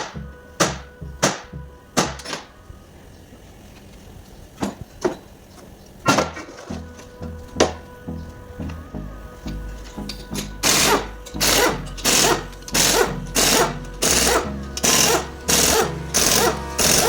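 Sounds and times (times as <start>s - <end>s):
faint background music: 0.0s - 17.0s.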